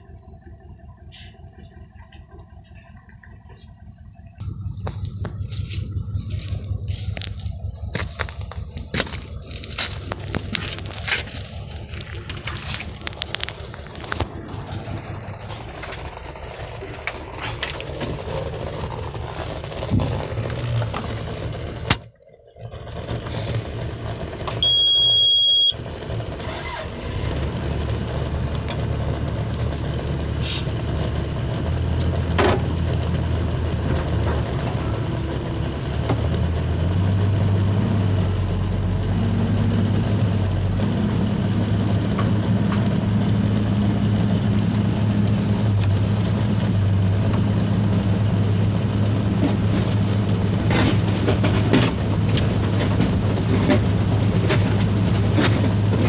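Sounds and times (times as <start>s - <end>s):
excavator diesel engine running: 0.0s - 56.0s
high steady beep: 24.6s - 25.8s.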